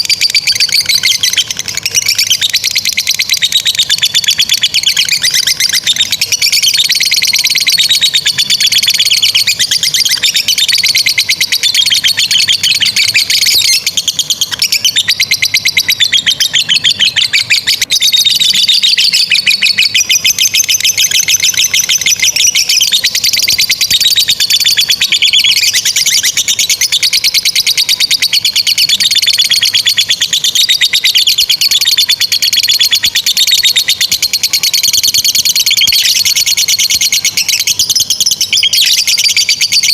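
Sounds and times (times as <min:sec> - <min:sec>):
lovebirds chattering song: 0:00.0 - 0:39.9.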